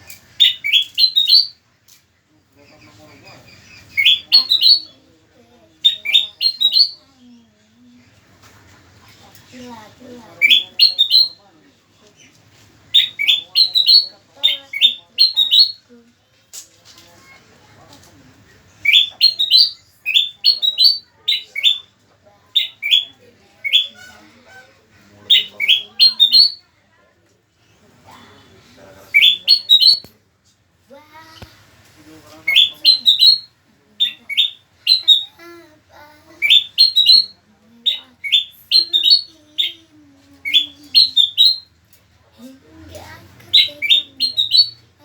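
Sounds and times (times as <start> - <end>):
bird chirping sharply: 32.5 - 35.3, 36.4 - 39.8, 43.5 - 44.9.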